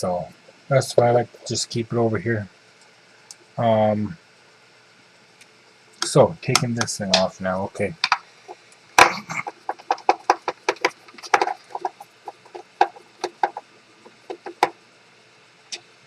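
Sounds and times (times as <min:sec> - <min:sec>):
small clicks and taps: 0:08.0 - 0:08.8, 0:09.4 - 0:14.8.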